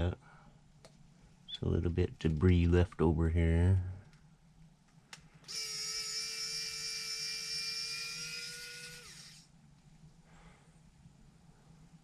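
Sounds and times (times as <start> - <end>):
electric screwdriver motor whining: 5.5 - 9.5.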